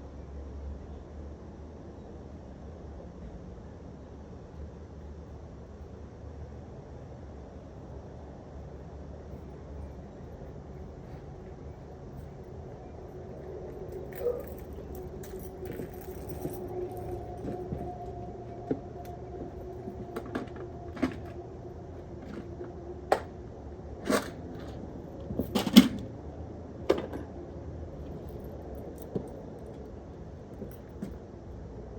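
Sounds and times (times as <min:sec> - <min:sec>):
steady low hum: 0:00.0 - 0:31.9
clicks and clinks of metal parts: 0:12.2 - 0:18.1, 0:24.0 - 0:26.1.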